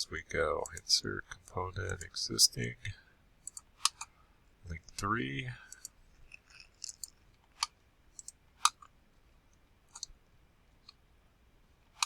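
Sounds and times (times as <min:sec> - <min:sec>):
computer mouse clicking: 0:00.6 - 0:00.9, 0:03.4 - 0:04.1, 0:05.7 - 0:06.0, 0:06.7 - 0:09.0, 0:09.9 - 0:10.2.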